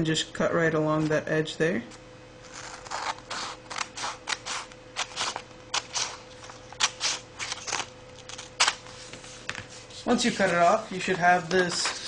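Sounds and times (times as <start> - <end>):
scissors cutting paper: 2.4 - 8.9.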